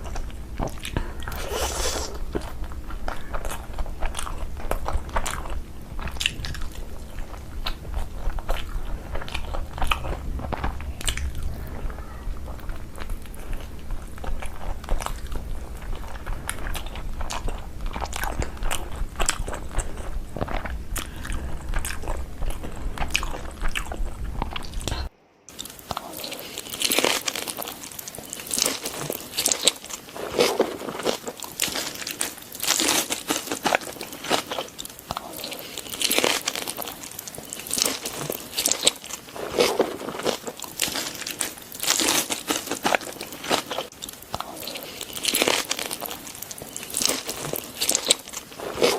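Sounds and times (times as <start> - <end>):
low hum: 0.0 - 29.4
crunchy bites and chewing: 0.0 - 48.9.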